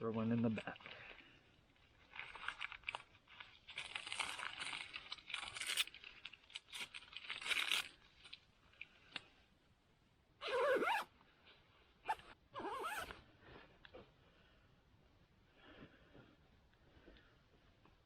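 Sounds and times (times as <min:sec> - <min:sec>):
crinkly material rustling: 0:00.0 - 0:09.5.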